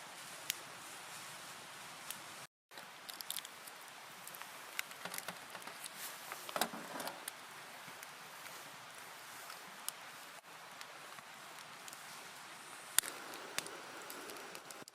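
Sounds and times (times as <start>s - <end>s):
steady hiss: 0.0s - 14.9s
rustling: 3.0s - 14.9s.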